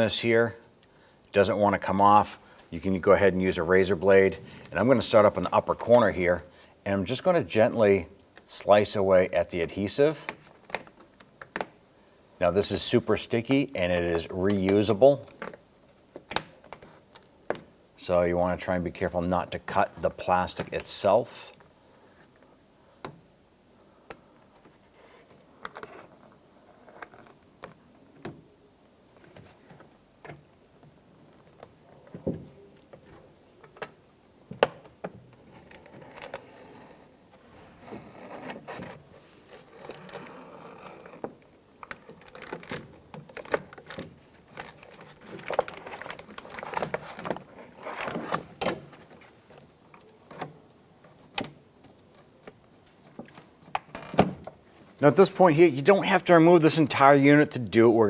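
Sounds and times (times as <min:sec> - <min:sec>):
plastic crinkling and rustling: 0:10.1 - 0:11.8, 0:34.6 - 0:56.4.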